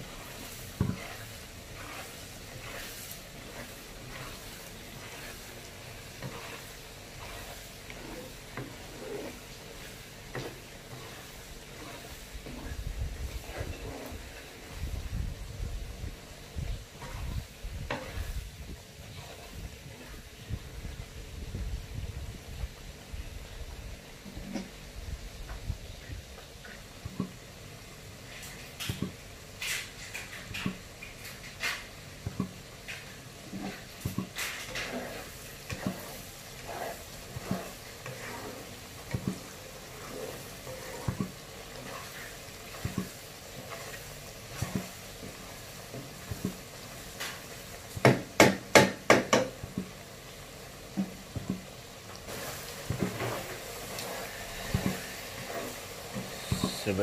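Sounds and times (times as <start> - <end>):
spatula scraping pan: 0.0 - 21.0, 28.3 - 50.0, 52.2 - 57.0
spatula knocking against pan: 48.0 - 49.6.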